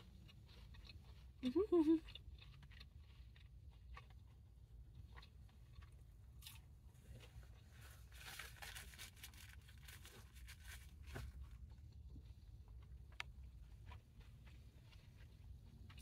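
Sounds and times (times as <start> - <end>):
paper packaging rustling: 8.0 - 11.3.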